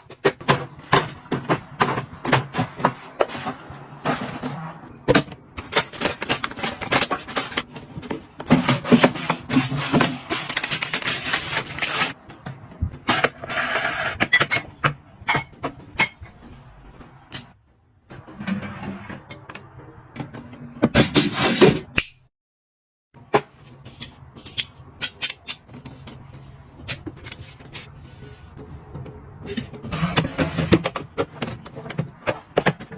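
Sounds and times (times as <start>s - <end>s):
packaging rustling: 9.0s - 12.2s.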